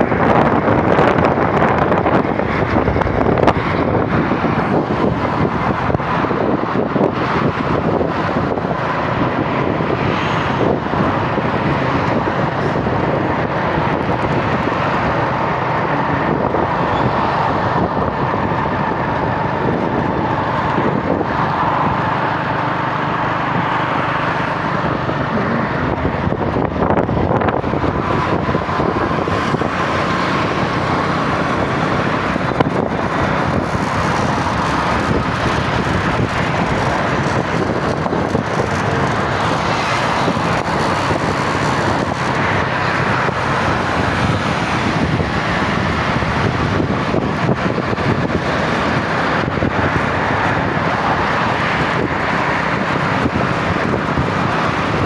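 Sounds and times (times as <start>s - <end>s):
surrounding traffic: 0.0s - 55.0s
vehicle road noise: 0.0s - 55.0s.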